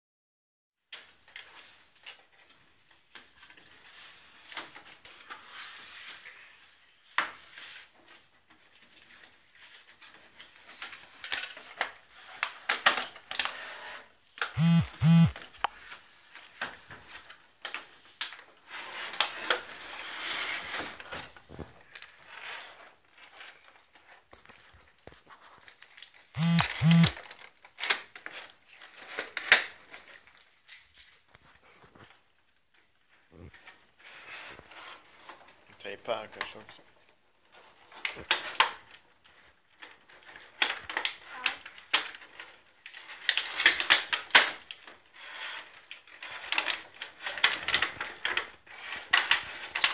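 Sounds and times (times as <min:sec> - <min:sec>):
short double buzz: 0:14.6 - 0:15.4, 0:26.4 - 0:27.2
cardboard and plastic rustling: 0:15.8 - 0:26.3.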